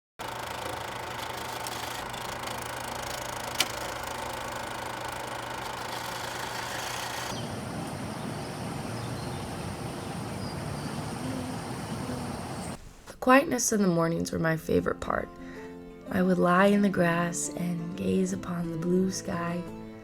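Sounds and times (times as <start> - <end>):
background noise with low hum: 5.9 - 13.3.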